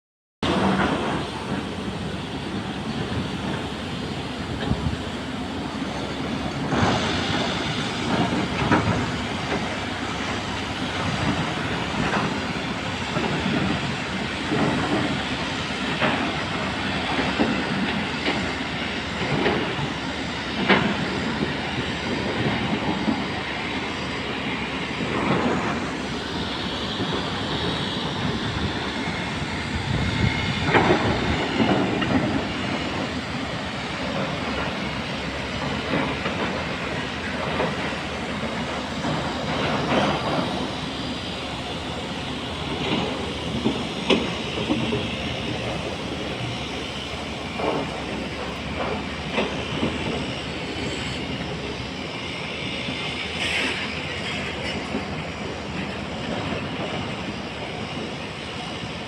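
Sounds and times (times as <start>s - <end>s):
heavy machinery rumbling: 0.4s - 59.0s.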